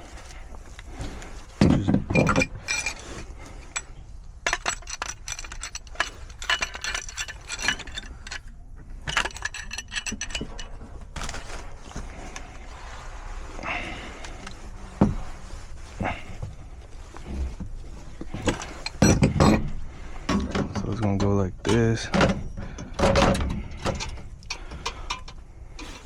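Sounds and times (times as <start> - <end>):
metal fittings clinking: 1.0 - 12.5, 18.3 - 26.0.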